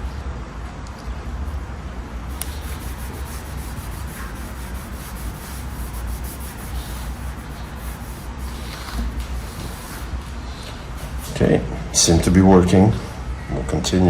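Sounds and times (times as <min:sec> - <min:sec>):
rubbing and scrubbing on metal: 0:02.3 - 0:10.3.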